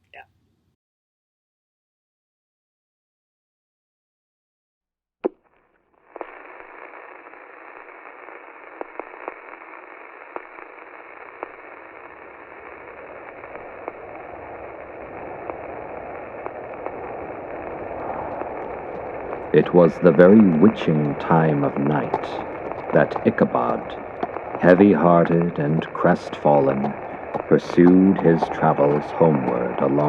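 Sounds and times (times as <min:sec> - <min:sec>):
crackles and pops: 0:05.2 - 0:30.0
radio static hiss: 0:06.1 - 0:30.0.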